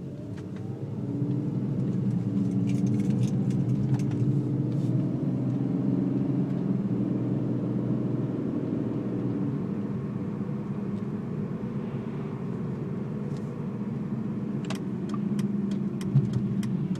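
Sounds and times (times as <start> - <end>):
car engine idling: 9.6 - 16.9.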